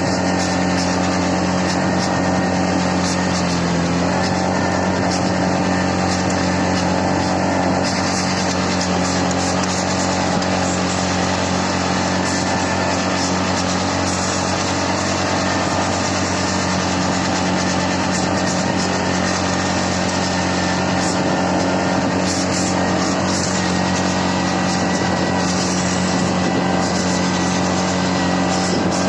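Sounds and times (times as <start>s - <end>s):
atv engine running: 0.0s - 29.0s.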